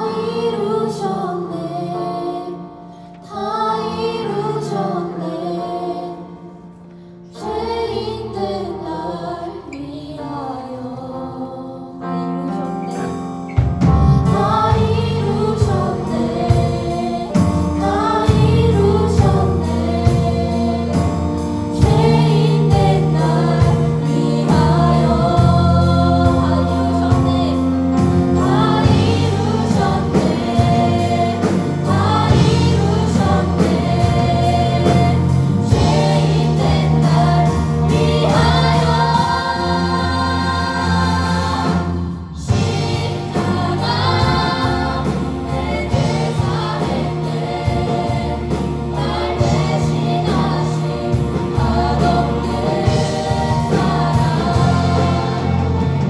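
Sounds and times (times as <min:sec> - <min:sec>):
choir singing: 0:00.0 - 0:56.0
live band playing: 0:12.5 - 0:56.0.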